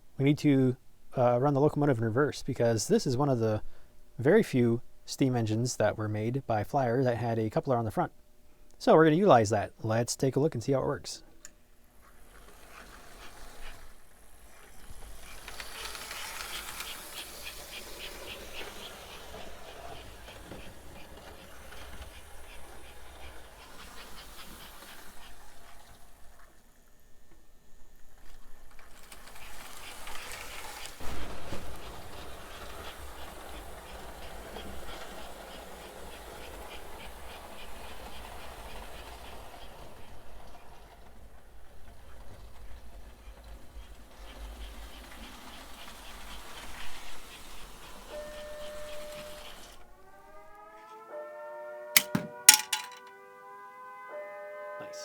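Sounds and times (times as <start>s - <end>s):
toy train motor and gear whir: 11.9s - 26.8s, 27.8s - 50.0s
fast ticking of wheels: 12.0s - 25.9s, 29.0s - 49.8s
sharp knock: 52.0s - 53.0s.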